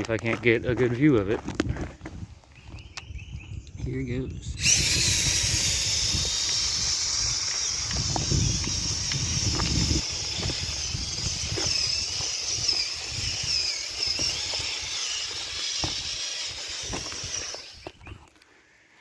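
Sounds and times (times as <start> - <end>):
small electric motors whining: 4.5 - 18.4.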